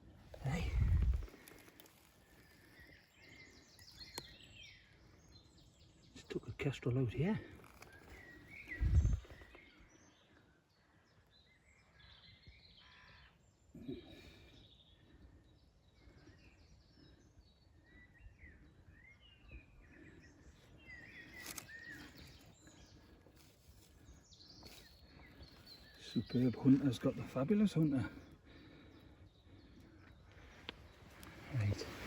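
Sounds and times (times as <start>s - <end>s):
faint birdsong chirps and warbles: 0.0s - 32.0s
quiet outdoor background noise: 0.0s - 32.0s.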